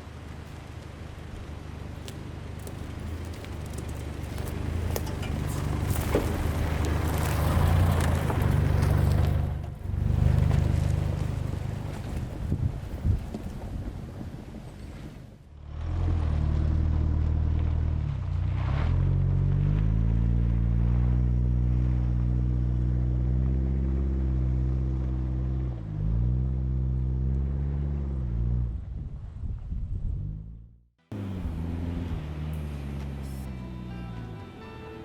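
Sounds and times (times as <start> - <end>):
car engine droning: 0.0 - 35.0
wind and road noise: 0.0 - 35.0.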